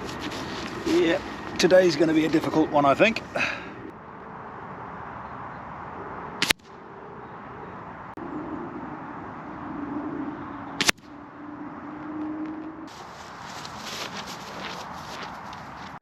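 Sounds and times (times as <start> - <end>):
air rifle shot crack: 6.4 - 6.7.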